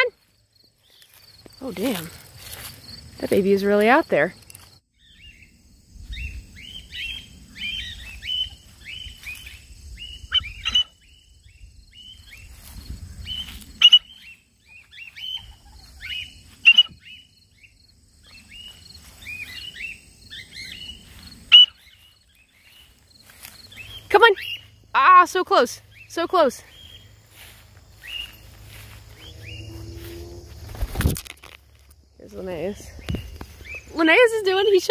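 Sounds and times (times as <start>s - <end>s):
cockatiels chirping: 10.3s - 11.0s, 13.3s - 17.2s
low rumble: 28.3s - 31.1s.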